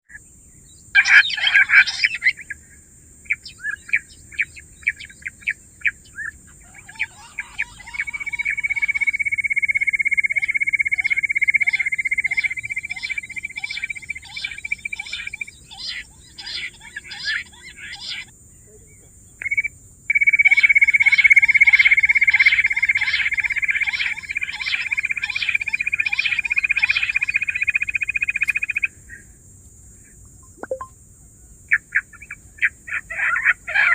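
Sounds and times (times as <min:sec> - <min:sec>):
quail chirping: 0:06.2 - 0:09.1.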